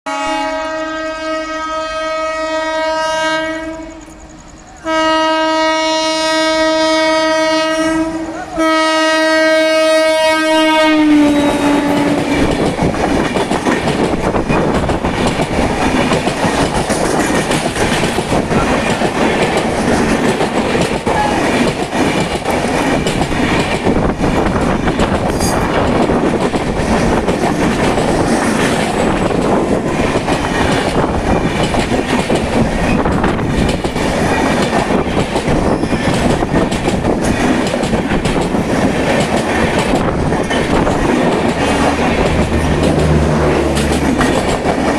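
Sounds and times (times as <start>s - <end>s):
two-tone locomotive horn: 0.1s - 12.5s, 21.1s - 21.6s
train coaches rumbling past: 0.1s - 44.9s
wheels clacking on rails: 7.0s - 44.9s.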